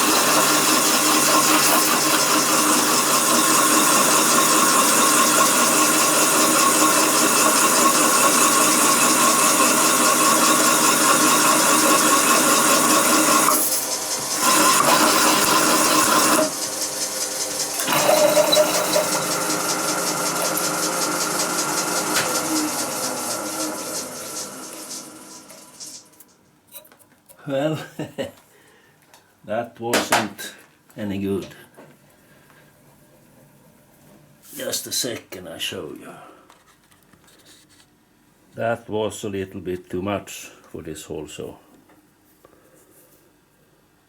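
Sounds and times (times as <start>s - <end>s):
hole saw whirring into metal: 0.0s - 26.3s.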